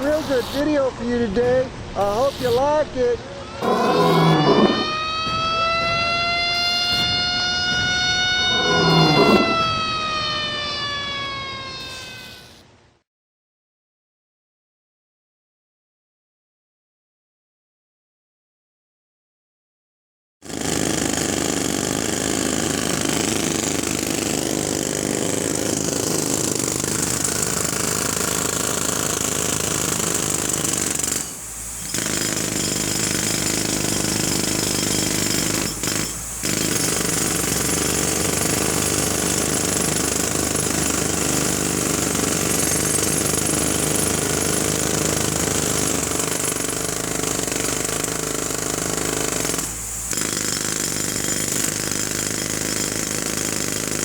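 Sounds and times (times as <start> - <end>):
jackhammer hammering: 20.4 - 54.0.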